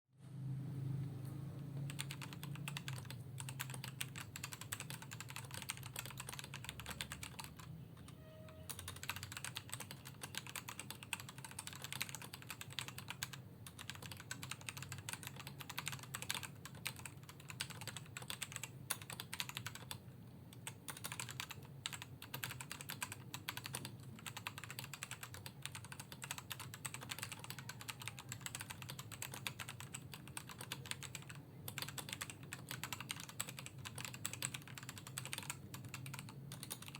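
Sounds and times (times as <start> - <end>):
mechanical keyboard typing: 1.8 - 36.9.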